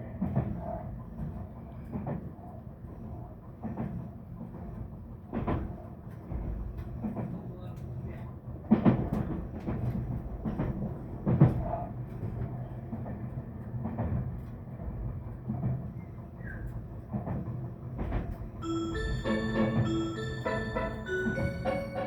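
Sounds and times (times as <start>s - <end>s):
thumps from the track: 3.6s - 7.4s, 8.6s - 18.6s
train cabin rumble: 3.6s - 22.0s
announcement chime melody: 18.6s - 22.0s.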